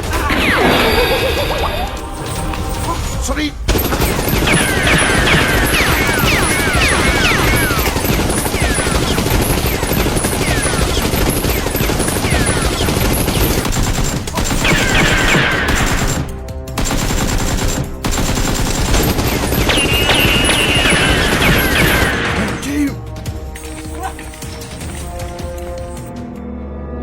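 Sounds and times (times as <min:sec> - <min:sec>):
automatic gunfire: 0:03.7 - 0:22.9.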